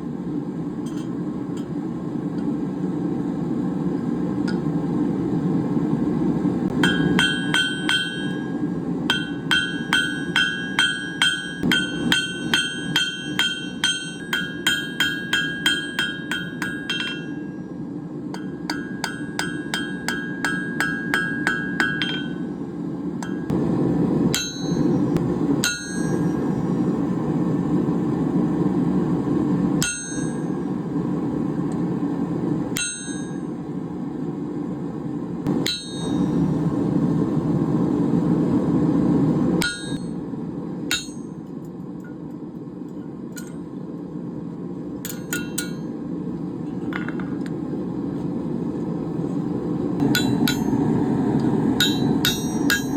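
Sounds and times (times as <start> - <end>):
hammer striking steel on anvil: 0.8 - 1.7, 6.7 - 22.6, 23.2 - 23.6, 24.3 - 26.8, 29.8 - 30.6, 32.8 - 33.6, 35.5 - 36.6, 39.6 - 40.3, 40.9 - 42.2, 43.0 - 43.7, 45.0 - 46.0, 50.0 - 51.0, 51.8 - 52.9.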